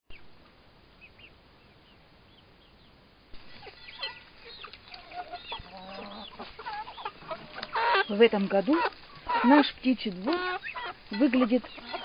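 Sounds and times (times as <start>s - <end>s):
chicks peeping: 1.0s - 12.0s.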